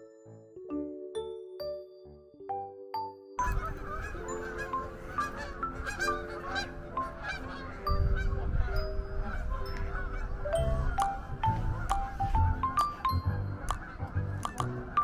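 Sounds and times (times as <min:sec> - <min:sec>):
light background music: 0:00.0 - 0:15.0
geese honking: 0:03.4 - 0:15.0.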